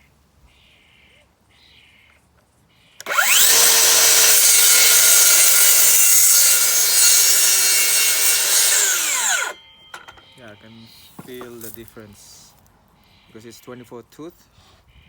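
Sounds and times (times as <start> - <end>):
circular saw cutting wood: 3.0 - 9.6
circular saw spinning up: 3.0 - 9.6.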